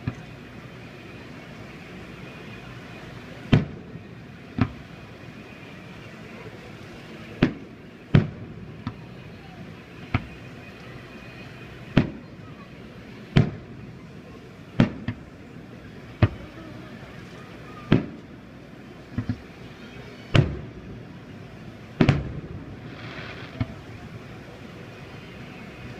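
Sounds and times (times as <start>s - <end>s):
fireworks crackling: 0.0s - 25.9s
fireworks booming: 3.5s - 5.0s, 7.3s - 9.3s, 10.0s - 10.5s, 11.8s - 12.3s, 13.2s - 14.0s, 14.7s - 15.4s, 16.2s - 16.6s, 17.8s - 18.4s, 19.0s - 19.6s, 20.3s - 21.1s, 21.9s - 24.4s.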